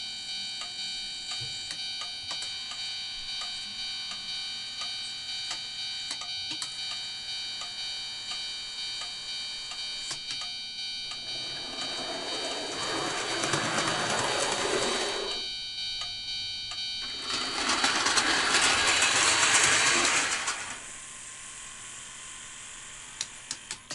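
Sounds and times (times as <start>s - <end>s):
steady high electrical tone: 8.0s - 15.7s, 16.9s - 23.5s
small motor whirring: 17.1s - 20.8s.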